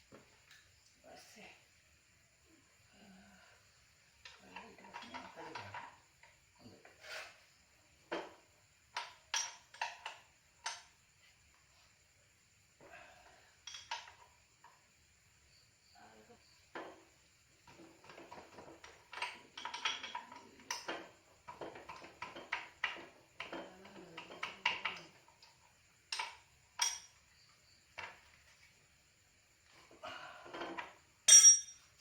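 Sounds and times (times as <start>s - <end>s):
metal tools clinking: 26.1s - 27.2s, 31.3s - 31.9s.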